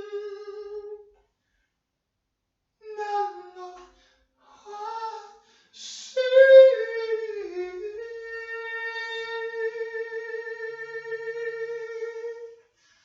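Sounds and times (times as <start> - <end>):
person singing: 0.0 - 1.1, 2.8 - 12.6
breath: 1.4 - 1.8, 3.9 - 4.3, 5.4 - 5.8, 12.7 - 13.0.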